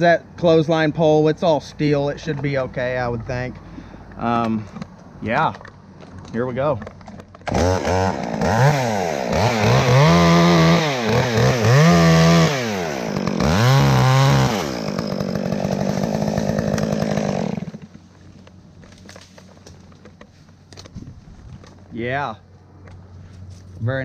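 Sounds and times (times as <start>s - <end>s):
chainsaw cutting wood: 7.2s - 20.1s.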